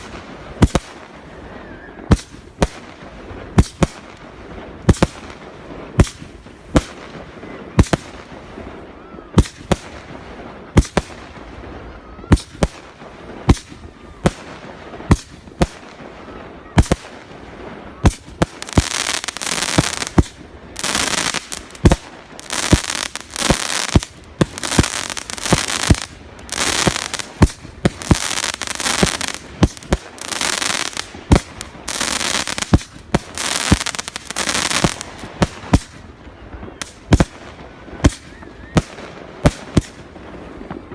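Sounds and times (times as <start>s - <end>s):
firework hissing rushes: 18.4s - 35.8s.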